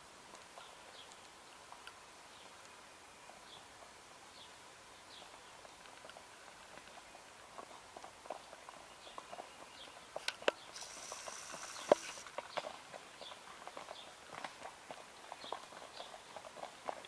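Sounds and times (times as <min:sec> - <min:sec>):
horse hooves clopping: 0:00.2 - 0:17.0
brief high hiss: 0:10.7 - 0:12.3.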